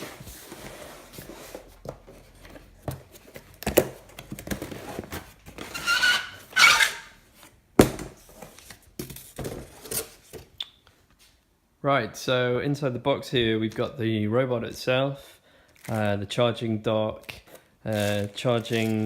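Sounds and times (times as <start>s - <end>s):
cardboard packaging rustling: 0.0s - 10.5s, 17.2s - 19.0s
squeaky scrape: 5.6s - 7.2s.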